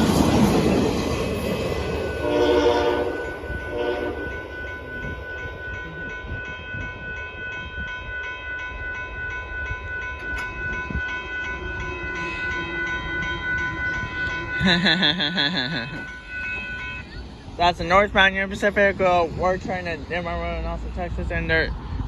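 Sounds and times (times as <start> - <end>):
crossing bell ringing: 0.0 - 21.4
train rumbling past: 0.0 - 22.0
locomotive horn blast: 2.1 - 4.4.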